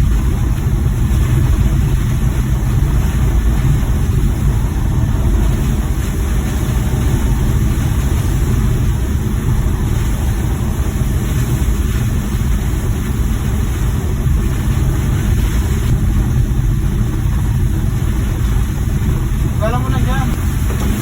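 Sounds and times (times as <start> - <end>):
van engine and road drone: 0.0 - 21.0.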